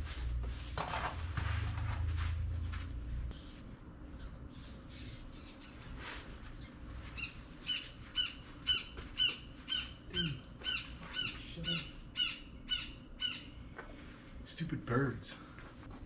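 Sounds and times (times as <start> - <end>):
bird chirping: 3.3 - 13.6.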